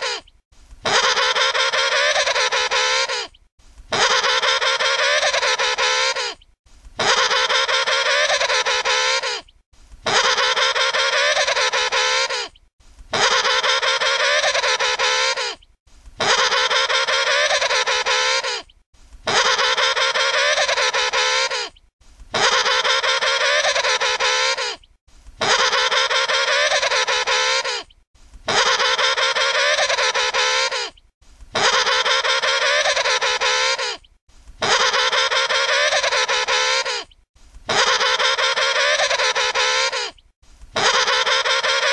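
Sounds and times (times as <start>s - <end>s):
penguin trumpeting call: 0.8s - 3.3s, 3.9s - 6.4s, 7.0s - 9.4s, 10.0s - 12.5s, 13.1s - 15.6s, 16.2s - 18.6s, 19.3s - 21.7s, 22.3s - 24.8s, 25.4s - 27.9s, 28.5s - 30.9s, 31.6s - 34.0s, 34.6s - 37.1s, 37.7s - 40.2s, 40.8s - 41.9s.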